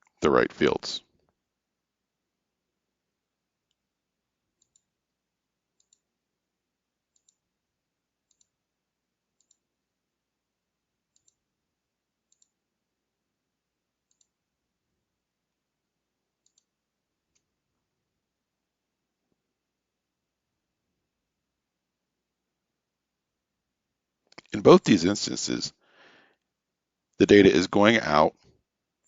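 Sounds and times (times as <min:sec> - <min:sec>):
faint computer mouse clicks: 0:04.6 - 0:04.9, 0:05.8 - 0:06.1, 0:07.1 - 0:07.4, 0:08.2 - 0:08.6, 0:09.4 - 0:09.6, 0:11.1 - 0:11.4, 0:12.3 - 0:12.6, 0:14.1 - 0:14.4, 0:16.4 - 0:16.7.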